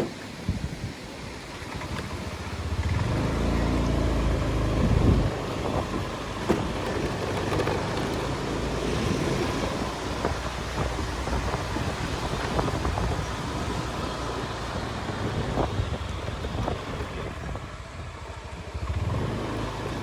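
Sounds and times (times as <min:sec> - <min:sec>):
vehicle engine revving: 0:02.3 - 0:17.8, 0:18.7 - 0:20.0.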